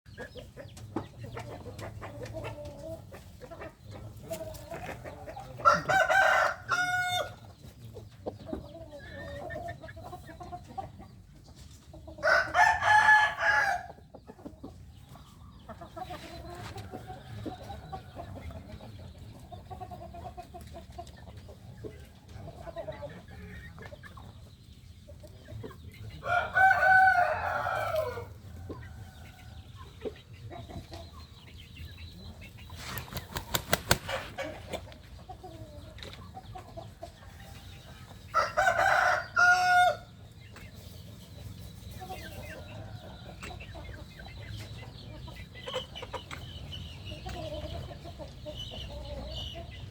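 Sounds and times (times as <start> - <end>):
hen clucking: 0.1 - 49.9
rooster crowing: 5.6 - 7.3, 26.2 - 28.2, 38.4 - 40.1.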